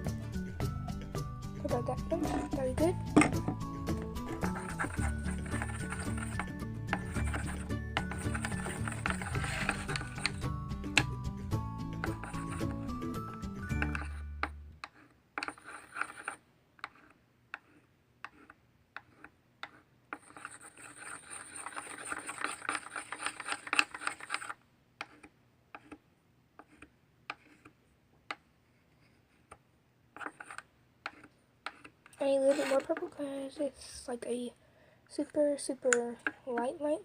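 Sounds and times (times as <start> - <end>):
pencil tapping and scraping a bowl: 1.7 - 26.0, 26.6 - 33.3
stirring in a bowl: 1.8 - 10.5, 12.0 - 25.2, 30.2 - 33.2.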